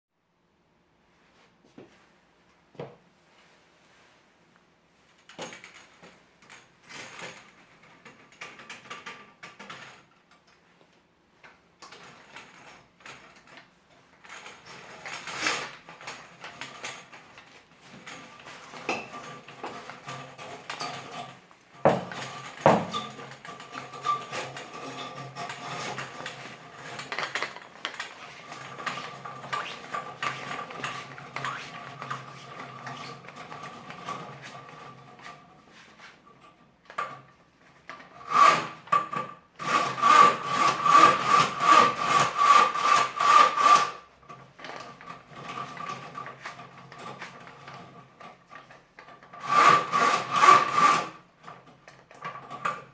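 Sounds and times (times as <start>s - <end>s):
drain auger cable rattling: 14.3s - 35.3s, 37.9s - 52.8s
metal clattering on porcelain: 26.8s - 28.2s.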